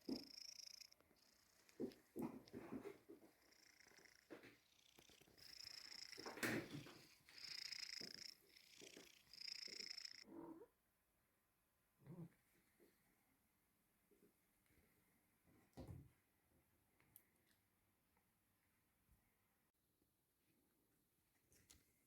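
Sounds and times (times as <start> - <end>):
cat purring: 0.0 - 10.7.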